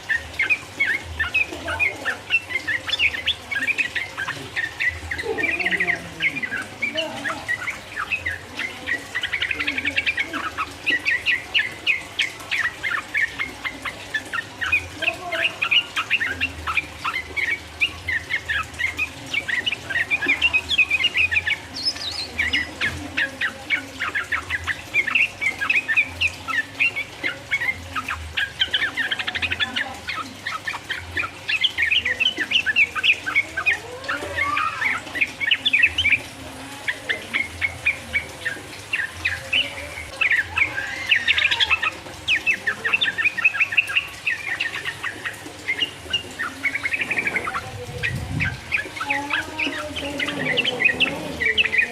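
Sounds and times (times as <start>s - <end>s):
bird chattering song: 0.0s - 51.9s.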